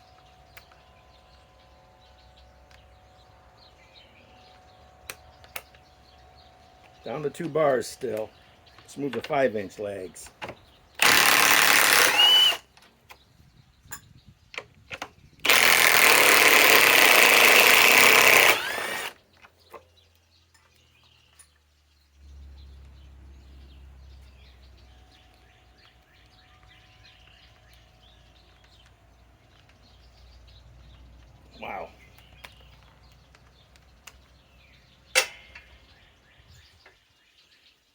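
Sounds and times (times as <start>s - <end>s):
impact wrench hammering: 35.2s - 35.6s.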